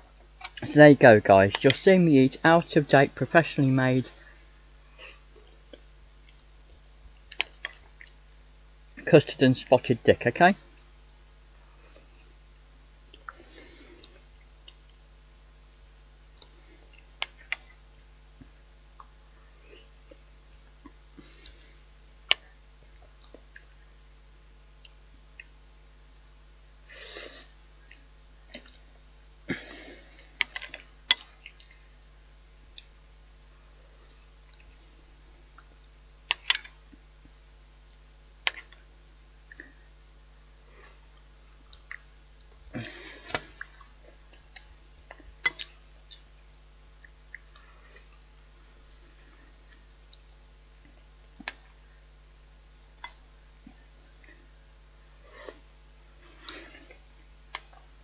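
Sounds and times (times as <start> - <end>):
food squishing: 41.1 - 46.4.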